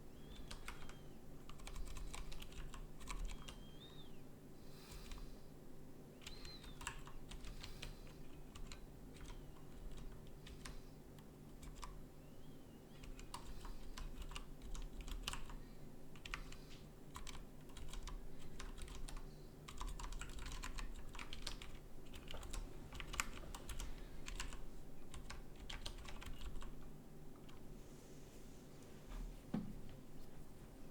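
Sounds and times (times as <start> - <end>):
faint steady hum: 0.0 - 30.9
keyboard typing clicks: 0.3 - 3.6, 16.2 - 26.8.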